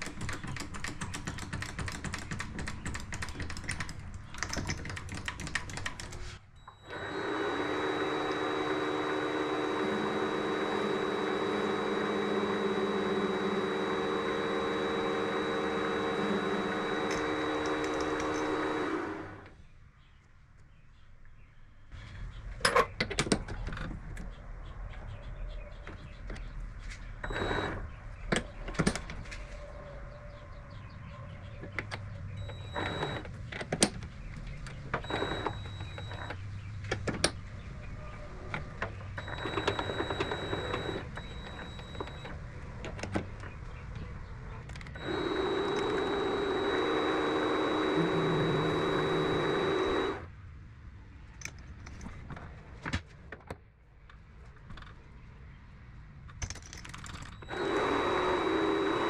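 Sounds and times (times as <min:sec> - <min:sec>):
tools clicking and knocking: 0:00.0 - 0:06.4, 0:16.6 - 0:18.8, 0:22.6 - 0:24.4, 0:51.4 - 0:52.5, 0:56.3 - 0:58.2
lathe whining: 0:06.7 - 0:19.5, 0:27.2 - 0:27.8, 0:32.4 - 0:33.2, 0:35.0 - 0:36.3, 0:39.2 - 0:42.4, 0:44.9 - 0:50.3, 0:57.4 - 0:59.0.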